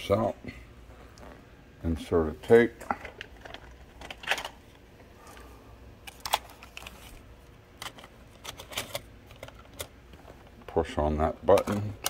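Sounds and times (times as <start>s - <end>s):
plastic cassette clicks: 6.1s - 6.9s, 7.8s - 9.9s.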